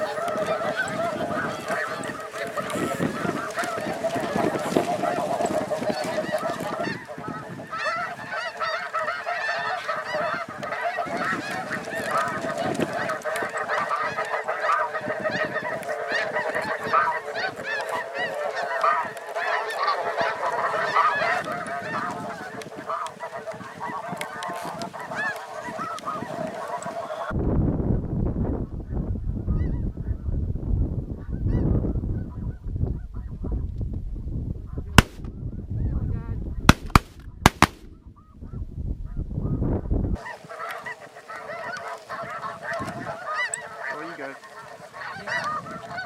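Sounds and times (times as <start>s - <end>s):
flock of geese honking: 0.0s - 27.4s, 35.0s - 35.2s, 36.2s - 37.8s, 40.2s - 46.0s.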